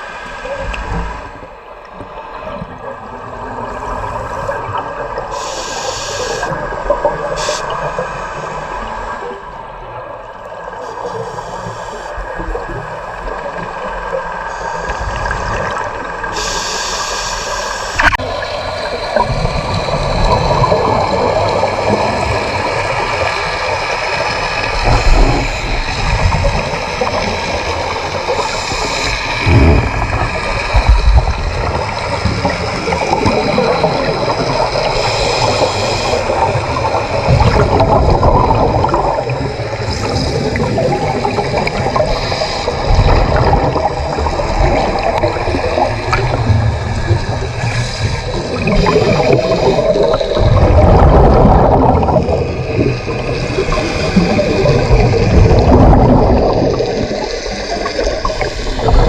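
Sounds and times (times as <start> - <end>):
water gurgling and rushing: 17.6 - 59.0.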